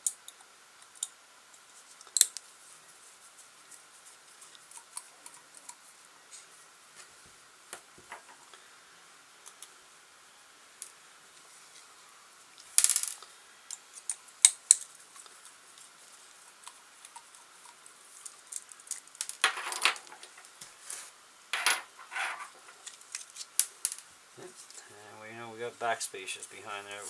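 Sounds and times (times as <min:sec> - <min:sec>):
small metal parts clattering: 0:12.8 - 0:13.2, 0:18.5 - 0:24.1.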